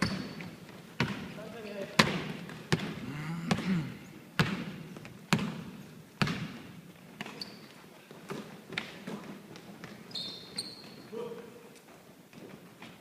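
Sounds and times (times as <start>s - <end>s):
shoe squeak: 0.0s - 0.6s, 7.2s - 7.9s, 9.9s - 11.2s
basketball bouncing on court: 0.0s - 7.6s.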